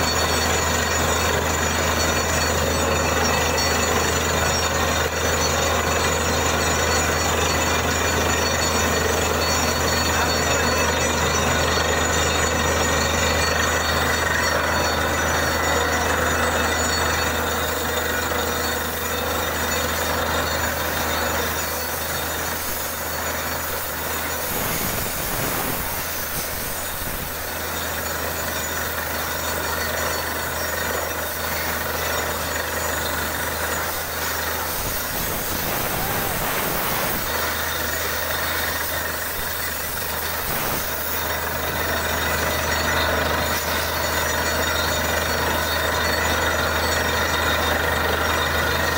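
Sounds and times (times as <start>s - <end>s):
drilling rig engine drone: 0.0s - 48.9s
loud even hiss: 24.4s - 27.4s, 33.9s - 37.7s, 39.2s - 41.0s.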